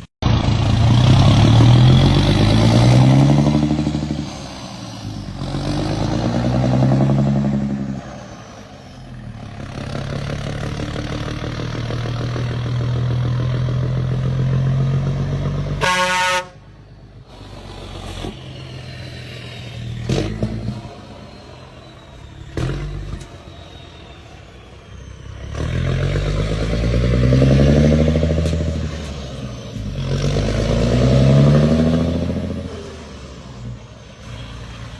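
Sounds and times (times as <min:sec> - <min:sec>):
diesel truck engine revving: 0:00.0 - 0:34.9
truck horn blast: 0:15.7 - 0:16.8.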